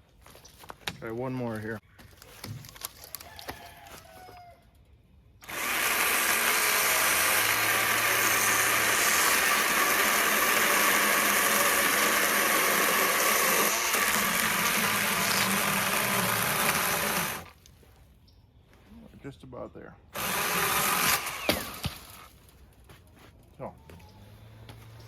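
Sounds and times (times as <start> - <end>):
battery saw cutting log: 5.4 - 17.6, 20.2 - 22.3.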